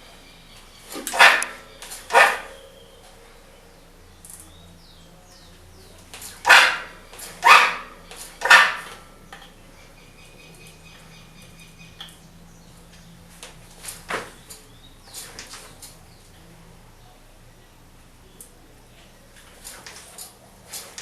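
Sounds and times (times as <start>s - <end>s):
air shock rebound noise: 0.8s - 3.2s.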